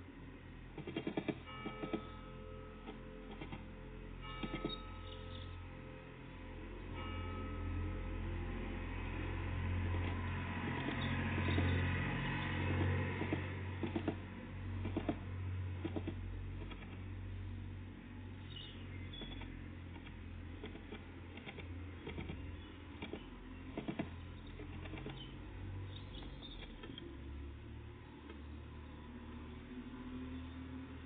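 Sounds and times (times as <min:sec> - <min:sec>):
faint high chirps: 0:18.4 - 0:19.6.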